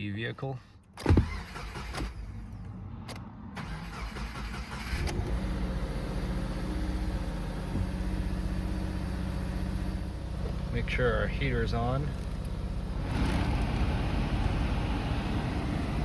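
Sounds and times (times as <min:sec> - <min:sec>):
car engine starting and idling: 0:00.9 - 0:16.0.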